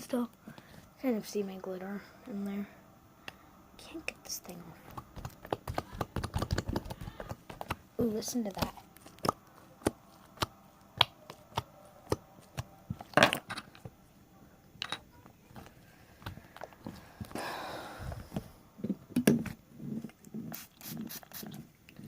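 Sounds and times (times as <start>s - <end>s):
slime squelch: 4.7s - 13.2s.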